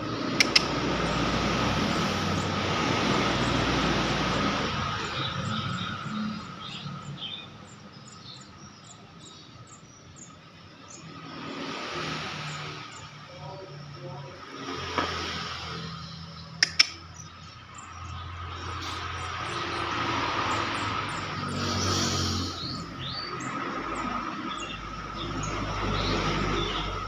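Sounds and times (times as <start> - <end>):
loud rushing noise: 0.0 - 6.3
sharp clicks: 0.2 - 0.9, 16.6 - 17.3.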